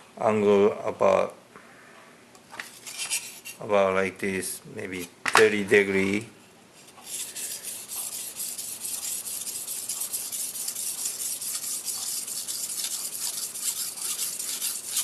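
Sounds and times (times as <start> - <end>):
knife scraping on whetstone: 2.7 - 3.6, 6.8 - 15.0.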